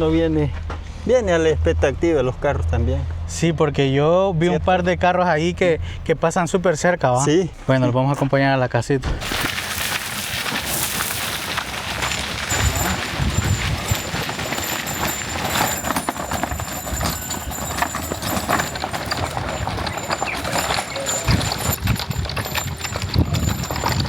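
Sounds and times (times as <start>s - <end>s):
cart wheels rattling on pavement: 9.2s - 24.0s.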